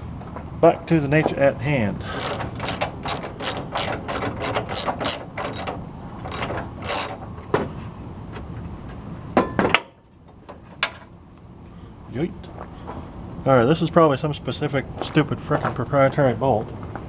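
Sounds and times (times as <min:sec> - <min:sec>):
ratchet wrench clicking: 0:02.2 - 0:07.2.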